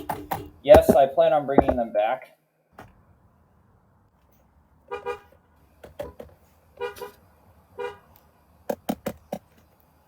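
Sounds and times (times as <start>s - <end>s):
car horn beeps: 4.9s - 5.4s, 6.8s - 7.2s, 7.8s - 8.1s.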